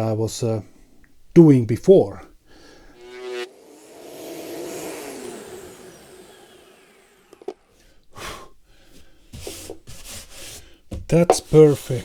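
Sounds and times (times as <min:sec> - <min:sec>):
planer motor winding down: 0:03.0 - 0:07.7.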